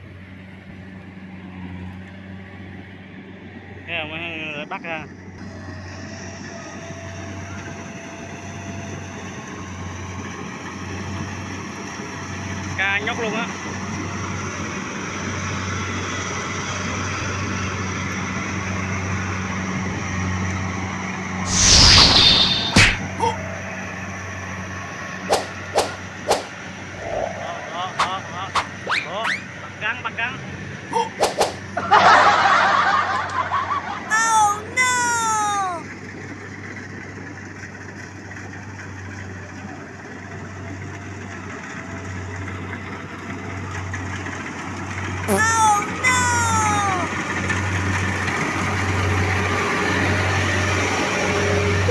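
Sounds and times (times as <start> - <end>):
harvester engine humming: 0.0 - 51.9
sudden loud rush: 21.5 - 23.1, 25.2 - 29.5.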